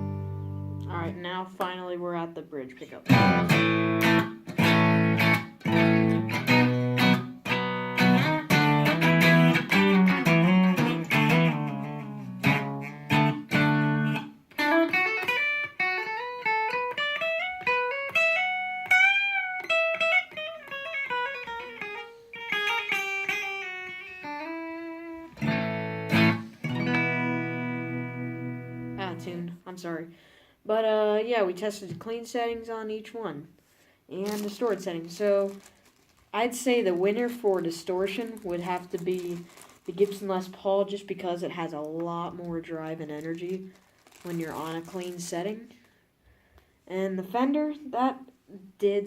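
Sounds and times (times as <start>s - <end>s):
electric guitar chords: 0.0s - 1.1s, 3.1s - 29.3s
electric guitar single notes: 0.0s - 1.2s, 3.0s - 29.4s.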